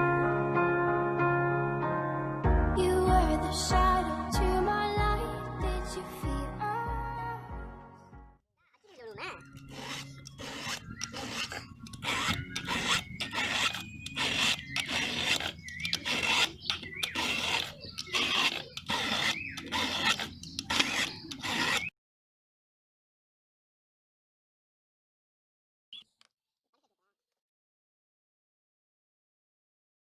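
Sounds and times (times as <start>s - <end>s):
hand scraping metal part: 9.2s - 21.9s.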